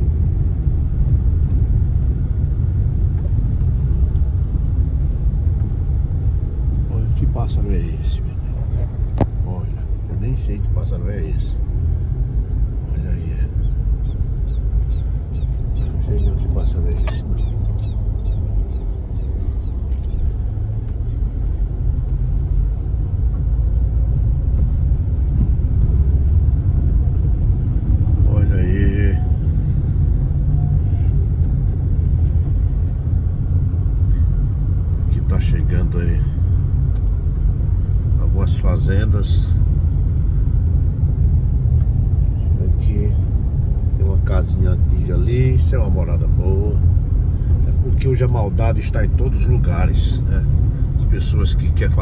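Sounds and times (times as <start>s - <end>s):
vehicle engine and road rumble: 0.0s - 52.0s.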